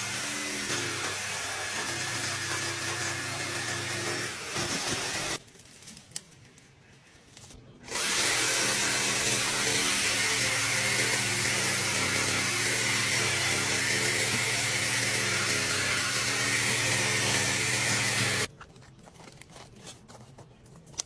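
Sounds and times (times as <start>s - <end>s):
reciprocating saw cutting wood: 0.0s - 5.4s, 7.9s - 18.5s.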